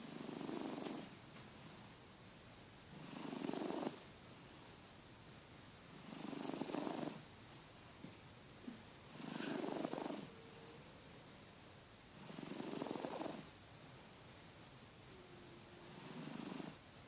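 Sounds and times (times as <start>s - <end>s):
cat snoring: 0.0s - 1.1s, 3.0s - 4.1s, 6.0s - 7.2s, 9.1s - 10.3s, 12.1s - 13.5s, 15.8s - 16.8s.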